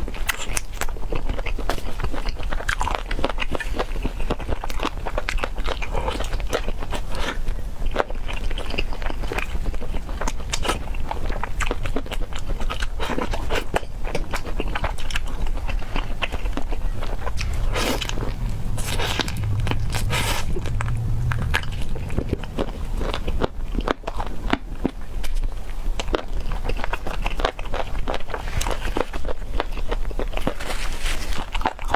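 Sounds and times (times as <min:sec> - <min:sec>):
steady low hum: 0:16.0 - 0:24.9.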